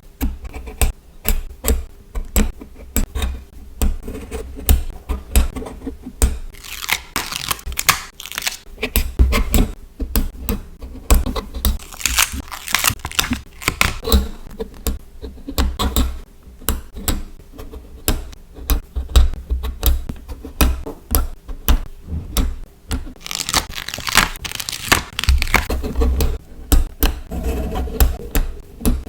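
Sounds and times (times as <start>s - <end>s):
stickers peeling crackly: 6.5s - 8.7s, 11.8s - 14.2s, 23.1s - 26.2s
small clicks and taps: 13.1s - 23.2s, 24.9s - 27.3s.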